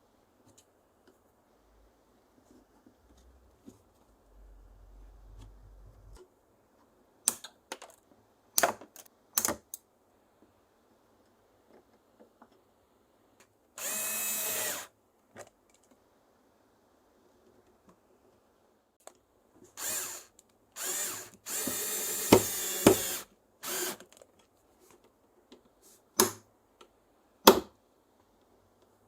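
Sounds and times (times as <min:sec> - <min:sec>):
power drill running: 0:13.8 - 0:14.9, 0:19.8 - 0:24.0.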